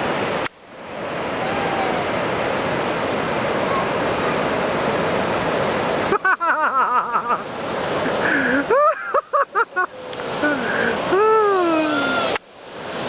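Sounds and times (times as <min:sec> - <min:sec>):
ocean surf on sand: 0:00.0 - 0:13.0
high-pitched calls: 0:11.6 - 0:12.4.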